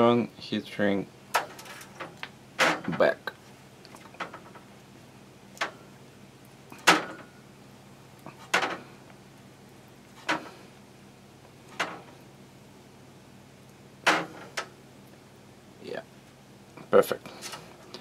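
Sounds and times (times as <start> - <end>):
scraping and tapping handling sounds: 1.3 - 4.7, 17.3 - 18.0.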